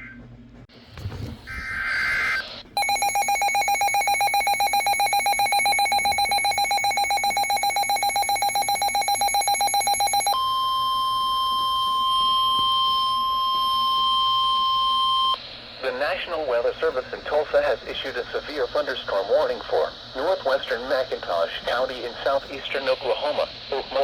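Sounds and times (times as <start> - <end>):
steady warning alarm tone: 2.0 - 15.4
rapidly pulsing alert tone: 2.8 - 10.4.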